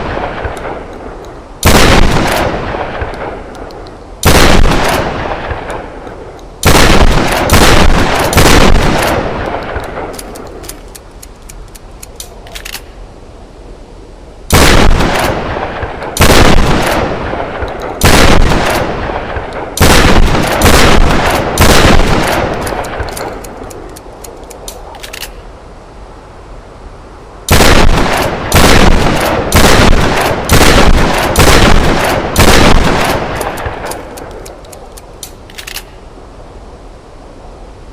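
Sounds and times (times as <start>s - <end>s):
shotgun shots echoing: 1.6s - 3.5s, 4.2s - 5.9s, 6.6s - 10.7s, 14.5s - 23.9s, 27.5s - 34.4s
faint clicks: 9.4s - 13.0s, 22.6s - 25.4s, 33.3s - 36.0s.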